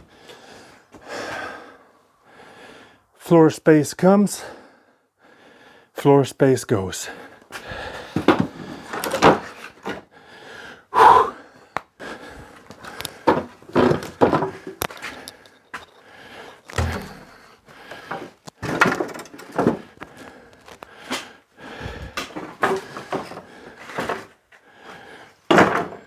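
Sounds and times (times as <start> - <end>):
wooden boards knocking: 8.2 - 9.5, 13.2 - 15.0, 16.7 - 17.4, 18.1 - 19.8, 25.5 - 26.0.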